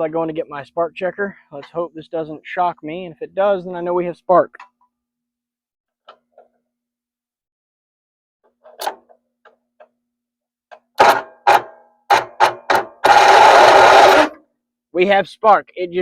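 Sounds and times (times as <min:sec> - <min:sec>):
loud sharp knocks: 0:11.0 - 0:13.2.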